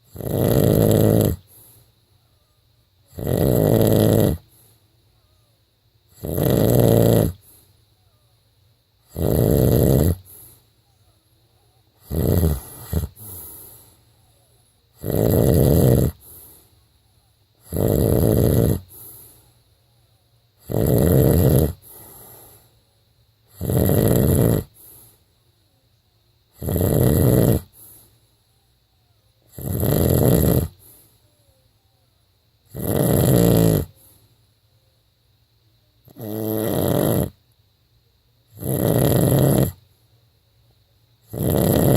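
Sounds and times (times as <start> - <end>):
man snoring loudly: 0.0 - 1.4, 3.1 - 4.4, 6.1 - 7.4, 9.1 - 10.4, 12.0 - 13.6, 15.0 - 16.4, 17.6 - 19.1, 20.6 - 22.2, 23.5 - 24.8, 26.6 - 27.8, 29.5 - 30.8, 32.7 - 34.0, 36.1 - 37.4, 38.6 - 39.8, 41.3 - 41.9.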